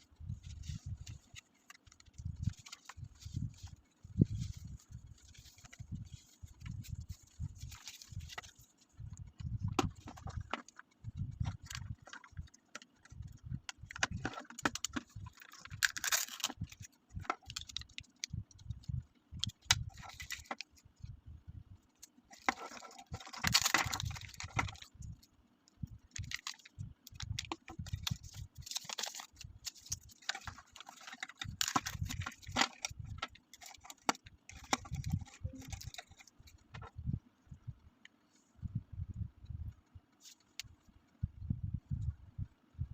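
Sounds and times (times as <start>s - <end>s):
packaging rustling and crinkling: 0.3s - 18.3s, 19.4s - 20.8s, 22.0s - 25.3s, 26.1s - 36.9s
small pieces clicking and knocking: 13.9s - 16.6s, 22.3s - 24.9s, 26.1s - 36.3s.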